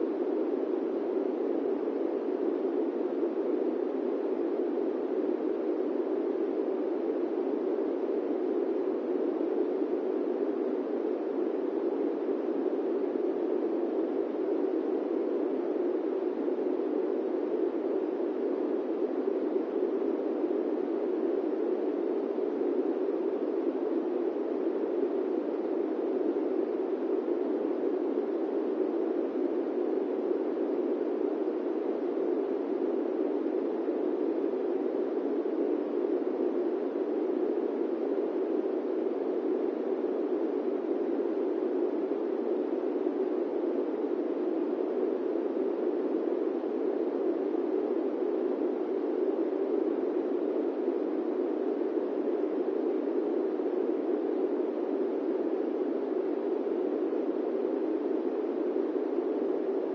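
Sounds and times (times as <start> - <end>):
airplane cabin white noise: 0.0 - 59.9.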